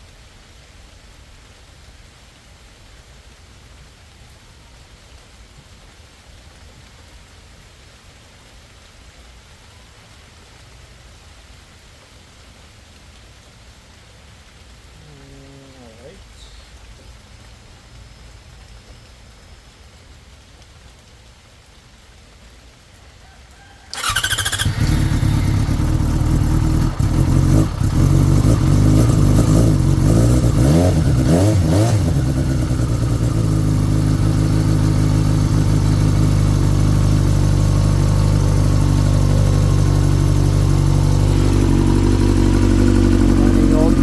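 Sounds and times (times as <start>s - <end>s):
electric starter cranking: 23.9s - 28.9s
motorcycle engine idling: 23.9s - 44.0s
motorcycle engine revving: 23.9s - 44.0s.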